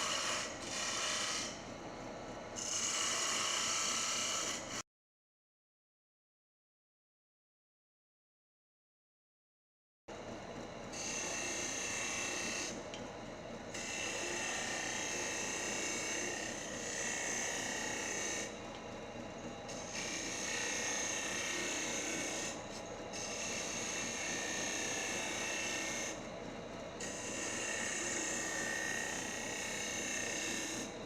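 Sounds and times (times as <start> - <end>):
wood lathe running: 0.0 - 1.5, 11.0 - 12.7, 13.7 - 18.5, 19.7 - 26.2, 27.0 - 30.9.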